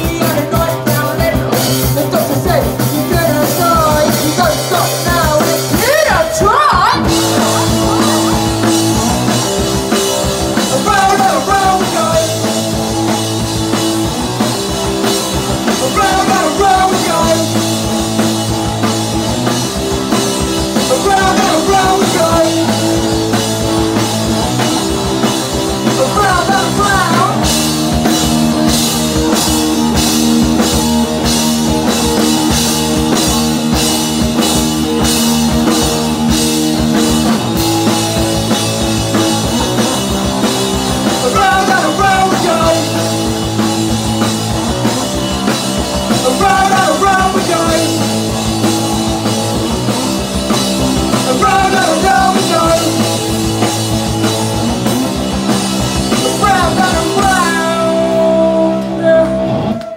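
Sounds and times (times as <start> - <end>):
person singing: 0.0 - 9.5, 10.6 - 12.5, 15.6 - 17.8, 20.8 - 22.9, 25.8 - 27.6, 41.0 - 43.4, 44.9 - 48.5, 51.1 - 53.6, 56.1 - 59.9
drum kit: 0.0 - 59.9
electric guitar: 0.0 - 59.9.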